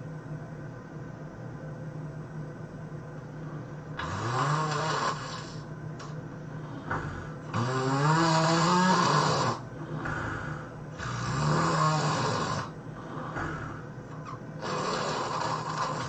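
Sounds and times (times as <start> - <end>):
person snoring: 4.0 - 5.7, 6.7 - 16.0.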